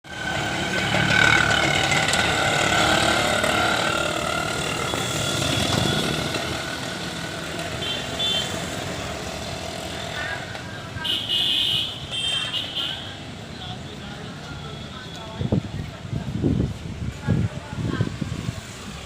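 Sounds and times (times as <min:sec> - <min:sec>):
two-stroke motorcycle engine running: 0:00.1 - 0:07.6.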